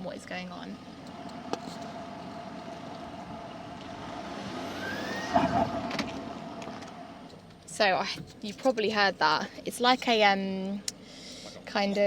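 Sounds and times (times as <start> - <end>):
diesel engine whine: 0.5 - 7.8
rising whistle: 4.3 - 5.9.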